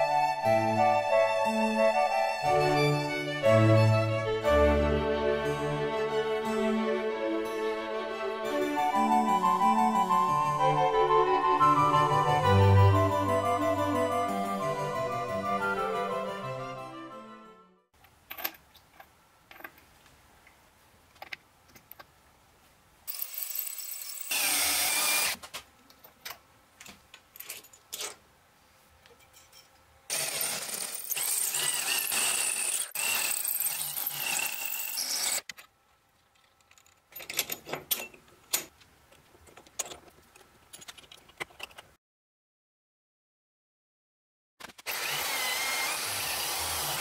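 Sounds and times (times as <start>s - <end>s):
metal parts clicking and knocking: 18.0s - 19.8s, 21.1s - 22.1s, 26.0s - 28.2s, 35.5s - 42.0s
power tool running: 23.2s - 25.4s, 30.1s - 35.4s, 44.8s - 47.0s.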